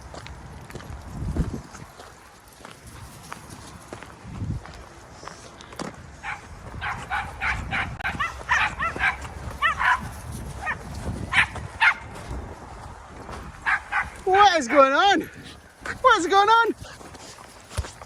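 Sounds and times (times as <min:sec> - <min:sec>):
small dogs barking and yipping: 0:06.2 - 0:12.3, 0:13.4 - 0:18.0.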